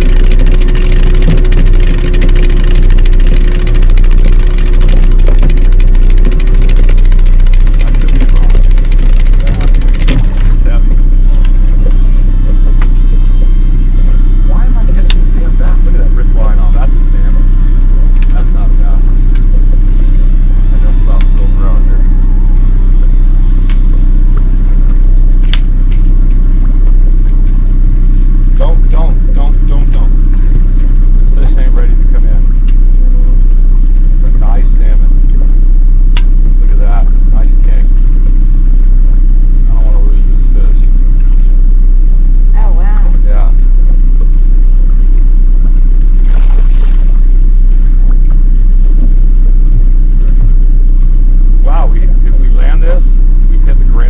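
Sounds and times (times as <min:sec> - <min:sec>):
boat motor rumbling: 0:00.0 - 0:54.0
sharp click: 0:25.4 - 0:26.4, 0:36.1 - 0:36.4.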